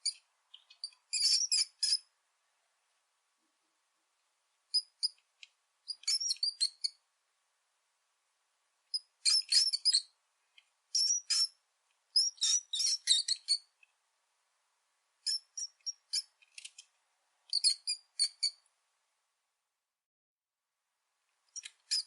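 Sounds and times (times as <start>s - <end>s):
rat squeaking: 0.0s - 2.1s, 4.7s - 5.2s, 5.9s - 7.0s, 8.9s - 10.2s, 10.9s - 13.8s, 15.2s - 16.8s, 17.5s - 18.6s, 21.5s - 22.0s.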